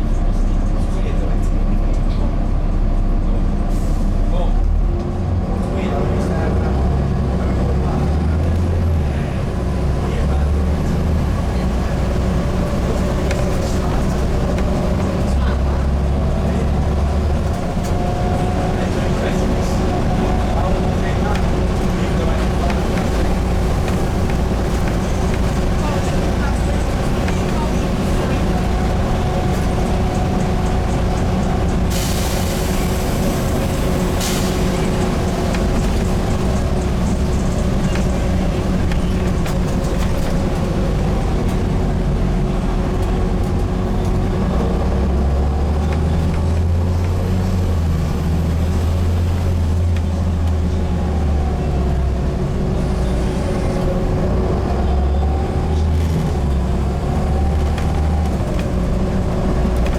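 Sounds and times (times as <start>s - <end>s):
bus diesel engine running: 0.0s - 59.9s.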